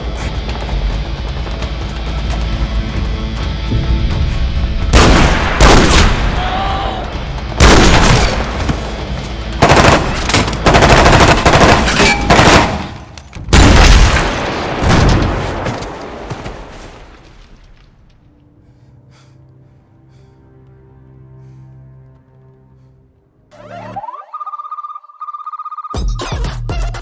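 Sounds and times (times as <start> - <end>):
dramatic background music: 0.0 - 15.3, 17.7 - 24.2
single gunshots: 5.0 - 6.4, 7.6 - 8.7
automatic gunfire bursts: 9.6 - 13.0.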